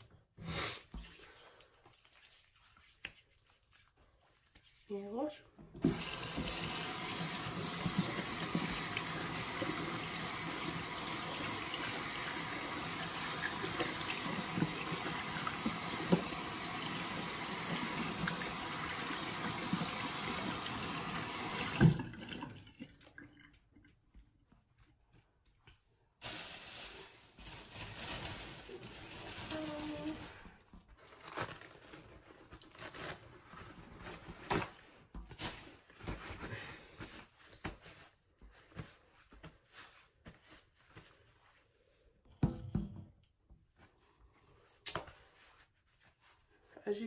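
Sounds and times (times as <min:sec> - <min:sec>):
hands washing with splashes: 0:00.9 - 0:04.9, 0:05.8 - 0:24.1
tap water running into sink: 0:05.8 - 0:24.0.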